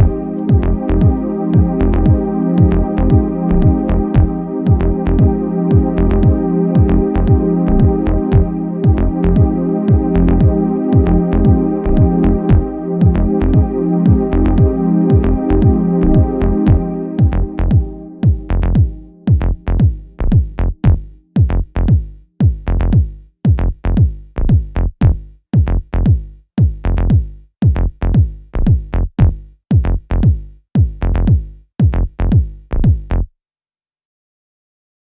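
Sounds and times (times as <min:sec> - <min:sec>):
held synth chords: 0:00.0 - 0:21.5
kick drum hits: 0:00.0 - 0:33.1.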